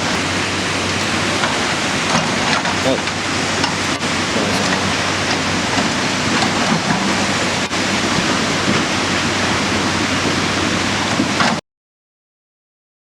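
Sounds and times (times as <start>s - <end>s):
rush of falling water: 0.0s - 11.6s.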